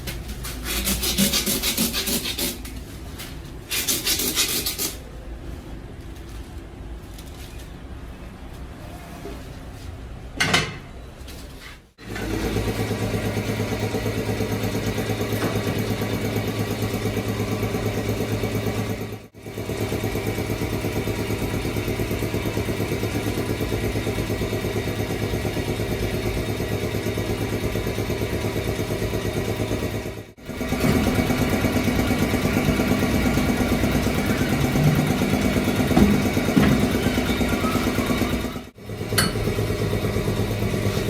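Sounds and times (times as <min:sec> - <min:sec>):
machine motor humming: 0:30.6 - 0:38.7.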